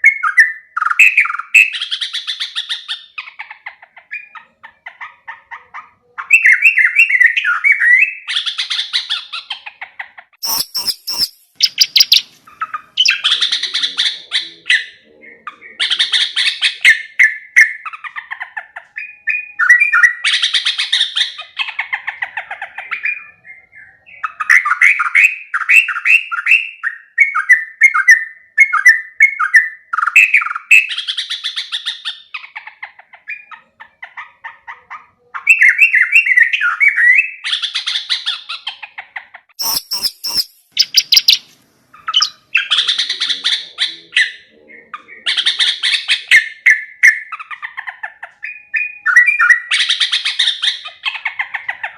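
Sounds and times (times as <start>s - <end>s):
bulbul chattering song: 10.4s - 25.1s, 39.6s - 51.9s.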